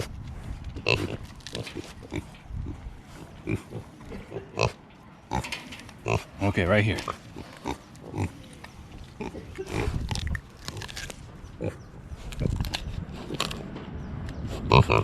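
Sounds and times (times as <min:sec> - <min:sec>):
pigs grunting: 0:00.8 - 0:08.5, 0:09.1 - 0:10.3, 0:14.6 - 0:15.0.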